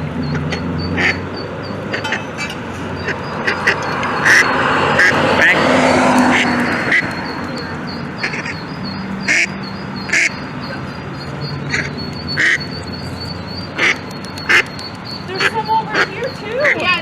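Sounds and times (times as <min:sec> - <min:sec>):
duck quacking: 0:00.3 - 0:07.2, 0:08.2 - 0:11.0, 0:11.7 - 0:12.7, 0:13.8 - 0:14.7, 0:15.3 - 0:17.0.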